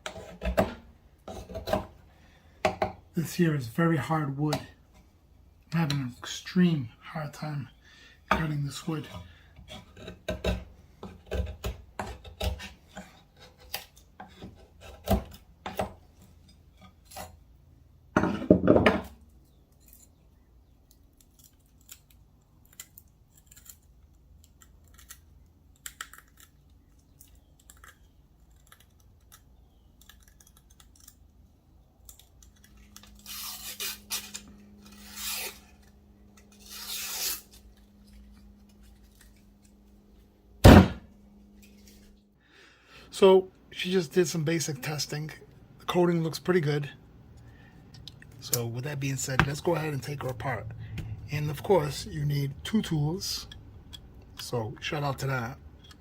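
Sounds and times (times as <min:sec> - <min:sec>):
knife scraping hard wood: 0:00.0 - 0:02.0, 0:08.4 - 0:15.9, 0:33.2 - 0:37.6
knife rasping strokes: 0:33.2 - 0:35.9, 0:36.5 - 0:37.7.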